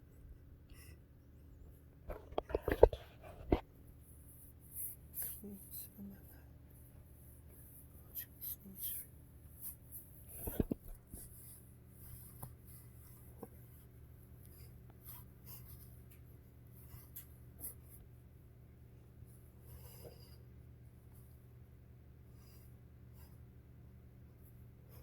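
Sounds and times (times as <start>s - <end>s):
scratchy rustles: 2.1s - 18.0s.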